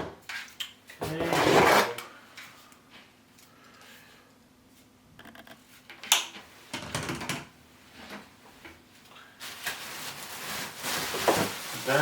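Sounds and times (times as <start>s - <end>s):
cardboard and plastic rustling: 9.3s - 12.0s.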